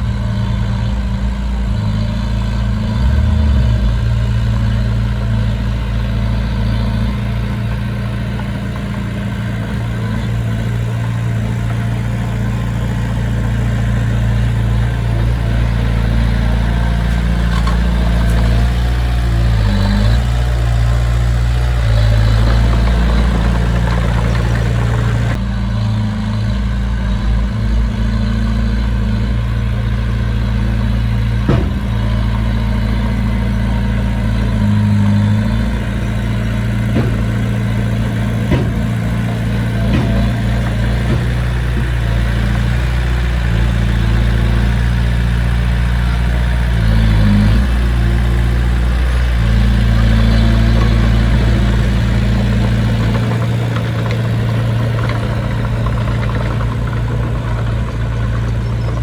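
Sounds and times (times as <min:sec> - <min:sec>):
heavy diesel engine running: 0:00.0 - 0:59.0
short knocks: 0:31.4 - 0:32.5, 0:35.0 - 0:43.0.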